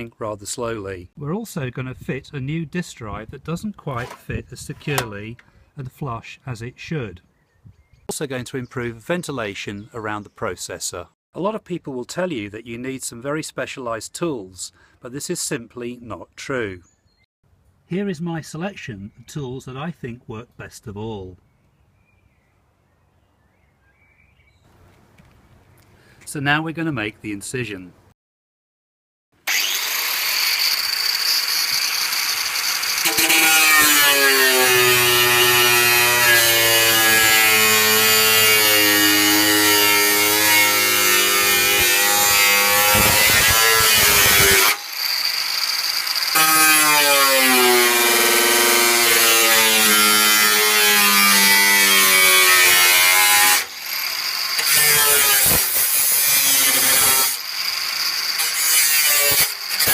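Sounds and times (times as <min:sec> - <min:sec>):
power tool cutting metal casing: 0:29.4 - 0:59.9.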